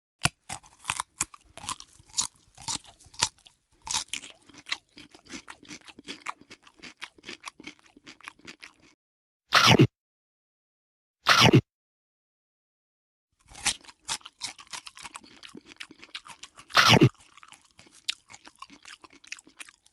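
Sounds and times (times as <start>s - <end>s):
crunchy food being chewed: 0.2s - 9.0s, 13.4s - 19.9s.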